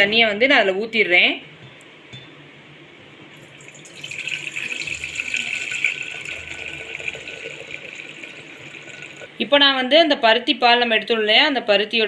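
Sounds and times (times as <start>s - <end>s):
milk pouring into pot: 3.4s - 9.4s.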